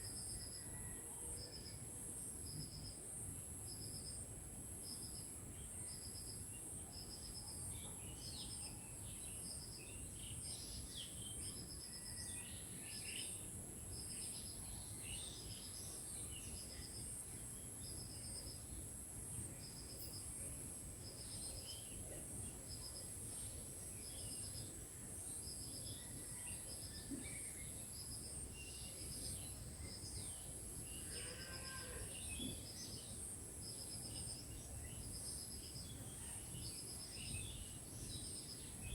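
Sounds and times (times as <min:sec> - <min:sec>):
cricket chirping in trills: 0:00.0 - 0:38.9.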